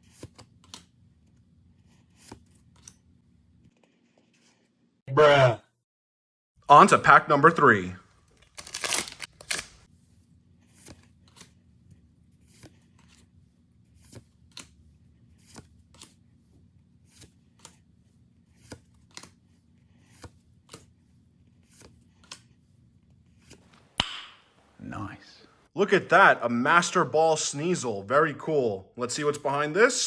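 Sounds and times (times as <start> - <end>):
foil pack crinkling: 8.1 - 9.9.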